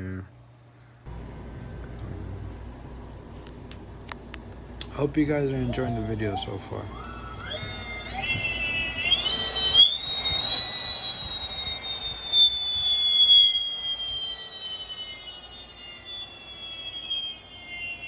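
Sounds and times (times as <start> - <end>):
electric motor whine: 5.2 - 18.0.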